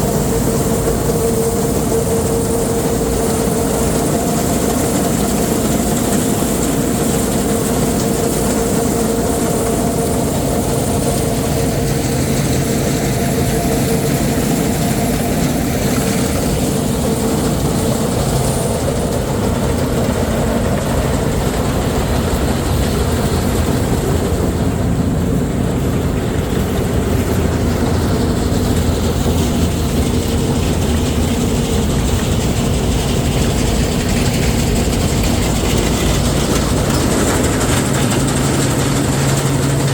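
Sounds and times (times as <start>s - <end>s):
harvest machinery engine running: 0.0s - 39.9s.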